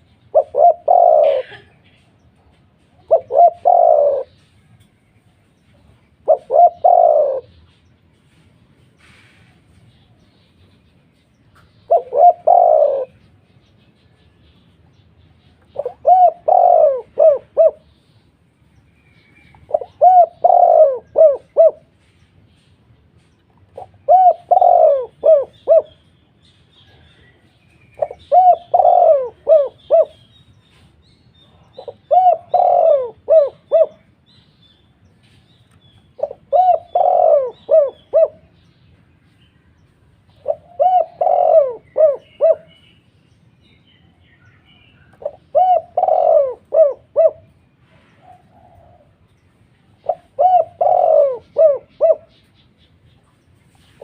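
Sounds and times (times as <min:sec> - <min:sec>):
dove cooing: 0:00.0 - 0:02.0, 0:02.8 - 0:04.6, 0:06.2 - 0:07.6, 0:11.8 - 0:13.4, 0:15.7 - 0:18.0, 0:19.6 - 0:22.1, 0:23.7 - 0:26.0, 0:26.8 - 0:30.3, 0:31.5 - 0:34.1, 0:36.2 - 0:38.5, 0:40.3 - 0:42.8, 0:45.1 - 0:49.3, 0:49.9 - 0:52.6.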